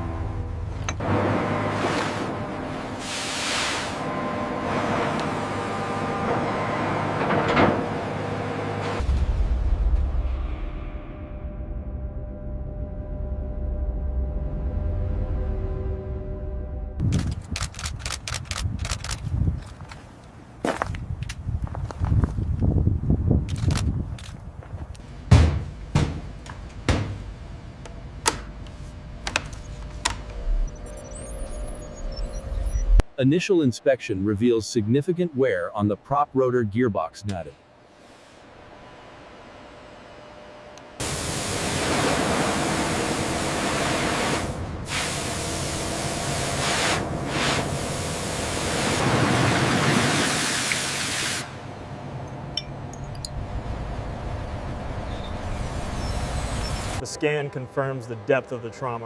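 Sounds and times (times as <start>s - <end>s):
quiet rumble: 9.0s - 17.6s
steady low rumble: 9.0s - 19.8s, 21.0s - 33.2s
faint hum: 10.0s - 17.2s, 25.0s - 49.0s
sharp metal knocks and clanks: 25.3s - 27.3s
loud hissing rush: 41.0s - 51.6s.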